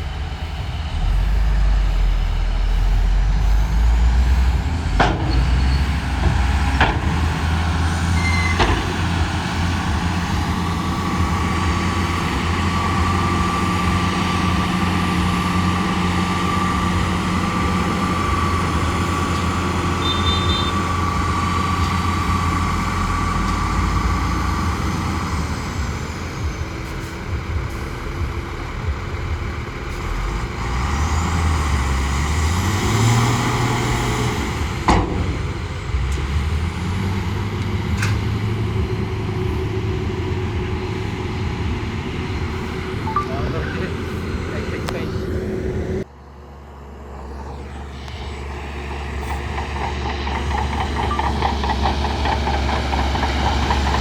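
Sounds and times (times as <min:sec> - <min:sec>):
high whine: 0:00.0 - 0:05.8, 0:43.0 - 0:46.1
bulldozer diesel engine running: 0:00.0 - 0:54.0.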